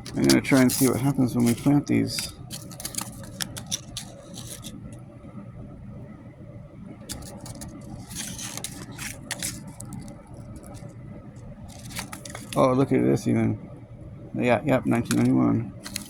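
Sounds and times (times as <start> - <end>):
plastic toy and packaging rustling: 0.0 - 4.8, 7.0 - 10.9, 11.6 - 12.8, 14.9 - 16.0
steady low hum: 0.0 - 16.0.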